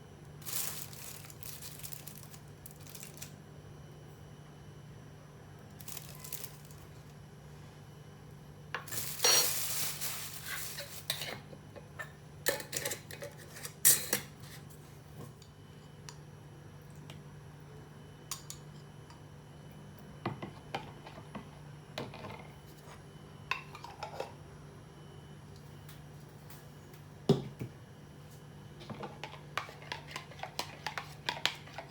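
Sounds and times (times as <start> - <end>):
dishes scraping and clattering: 10.4 - 14.6.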